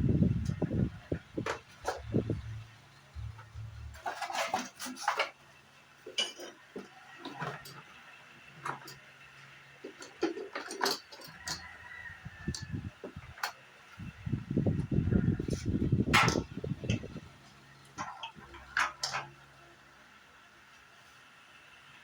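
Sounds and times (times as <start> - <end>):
low hum: 0.0 - 4.1.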